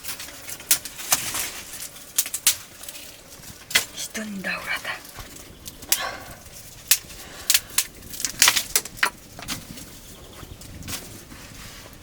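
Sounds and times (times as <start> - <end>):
sharp knocks and clatters: 8.2 - 9.9.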